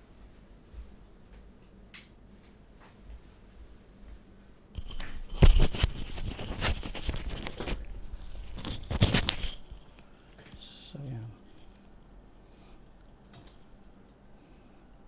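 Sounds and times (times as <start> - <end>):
plastic packaging crackling: 4.8 - 10.6.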